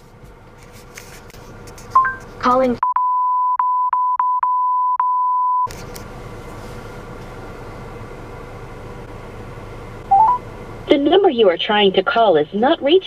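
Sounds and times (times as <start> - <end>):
high beep tone: 2.8 - 5.7, 10.1 - 10.4
phone line hiss and hum: 10.1 - 10.4.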